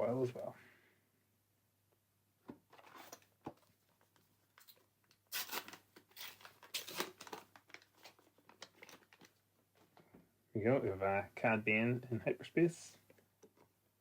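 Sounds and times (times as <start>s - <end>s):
foil crinkling: 4.6s - 9.4s
foil pack tearing open: 5.3s - 9.3s.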